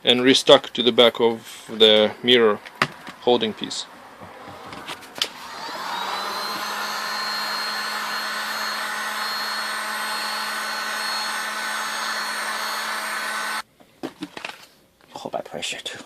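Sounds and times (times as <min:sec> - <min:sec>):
hot-air blower whine and rush: 0:04.7 - 0:13.6.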